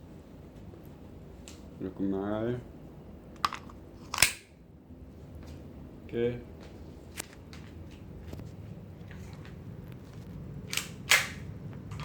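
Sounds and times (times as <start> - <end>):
pistol handling clicks: 4.2 - 4.5, 10.7 - 11.4.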